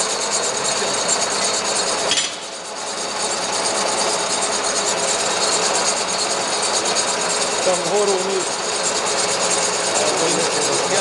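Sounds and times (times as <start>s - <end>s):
gear hobbing machine clattering: 3.3s - 11.0s.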